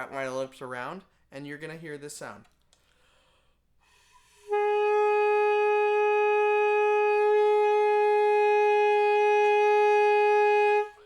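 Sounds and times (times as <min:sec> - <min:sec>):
alto saxophone long note: 0:04.4 - 0:11.0.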